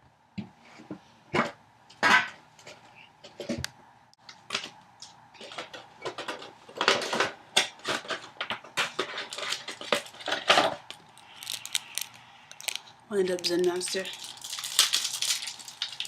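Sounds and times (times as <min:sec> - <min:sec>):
crinkling and tearing packaging: 0:08.9 - 0:16.0.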